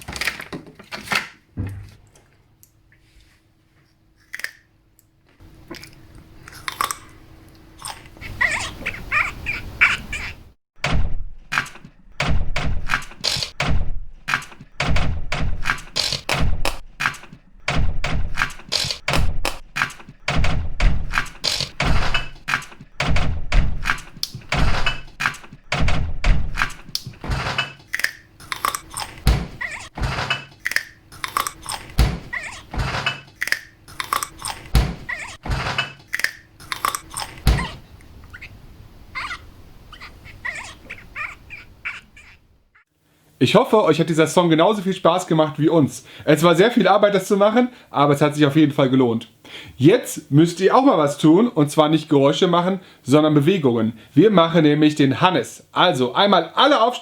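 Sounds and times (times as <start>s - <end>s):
found noise percussion beat: 10.8s - 27.2s.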